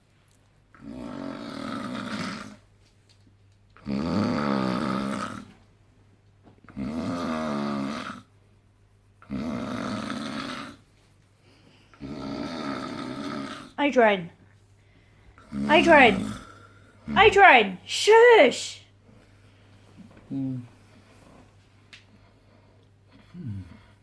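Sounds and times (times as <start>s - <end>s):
man snoring: 0.9s - 2.5s, 3.8s - 5.4s, 6.8s - 8.2s, 9.3s - 10.8s, 12.0s - 13.7s, 15.5s - 16.6s.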